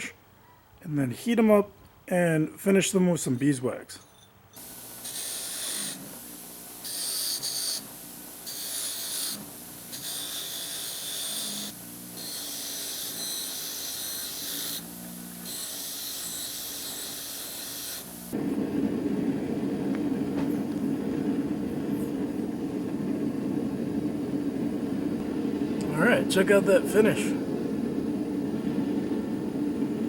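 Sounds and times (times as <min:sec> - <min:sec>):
wire wheel scratching metal: 0:04.6 - 0:18.4
steady rushing noise: 0:18.3 - 0:30.0.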